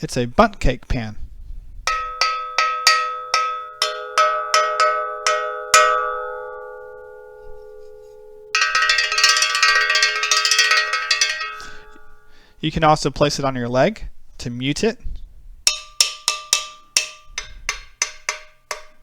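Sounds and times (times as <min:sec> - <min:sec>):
metal cake pan struck ringing: 0:01.9 - 0:12.4, 0:15.7 - 0:19.0.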